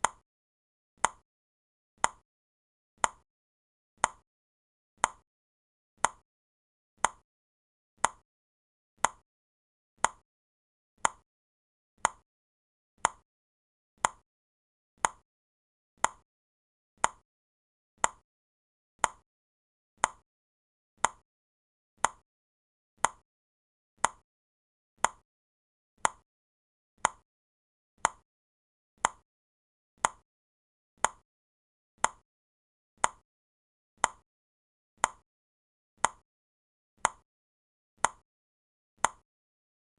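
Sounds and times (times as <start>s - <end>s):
timer ticking: 3.0s - 3.2s, 5.0s - 5.2s, 17.0s - 17.2s.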